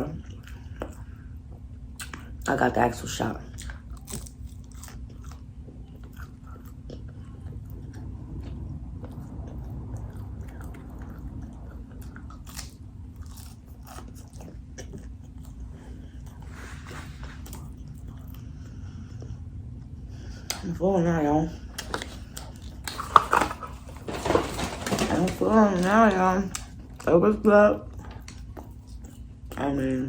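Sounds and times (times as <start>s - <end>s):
steady low hum: 0.0s - 30.0s
person chewing food: 3.6s - 20.6s, 21.6s - 24.1s
crisp crunches: 21.8s - 26.8s.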